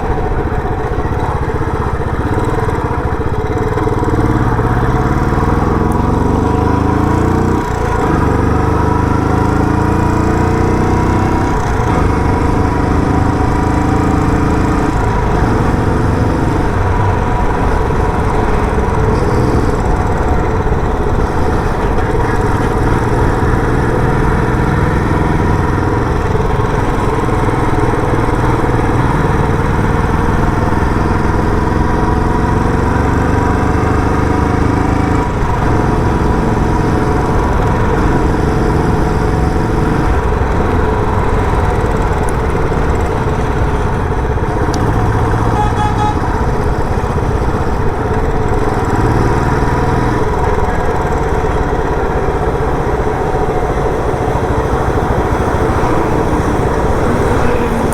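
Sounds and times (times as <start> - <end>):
motorcycle engine running: 0.0 - 57.9.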